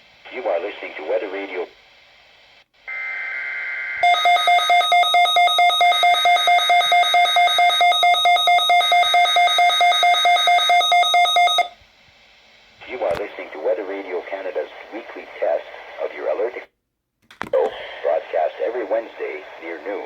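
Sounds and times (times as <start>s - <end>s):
alarm beeping in rapid pulses: 4.0s - 11.8s.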